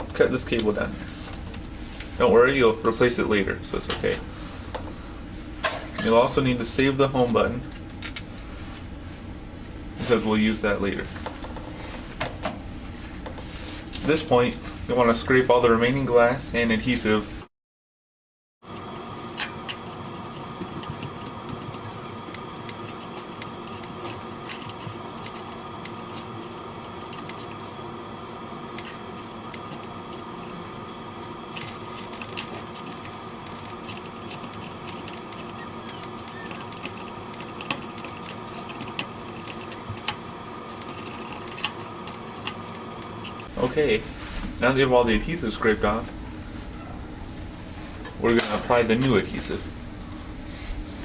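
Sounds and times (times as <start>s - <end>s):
steady mechanical hum: 0.0s - 17.5s, 18.6s - 51.0s
sharp clicks and scratches: 18.7s - 43.5s.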